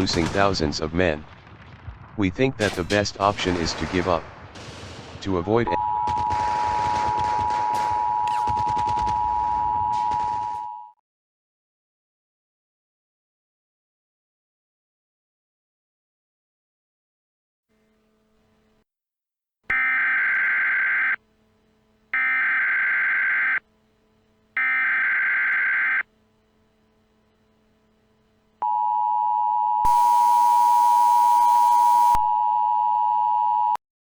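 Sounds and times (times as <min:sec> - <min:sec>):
two-tone attention signal: 0:05.8 - 0:10.9, 0:19.7 - 0:21.2, 0:22.2 - 0:23.6, 0:24.6 - 0:26.1, 0:28.6 - 0:33.8
buzzy digital data screech: 0:19.7 - 0:21.2, 0:22.2 - 0:23.7, 0:24.6 - 0:26.1, 0:29.9 - 0:32.2.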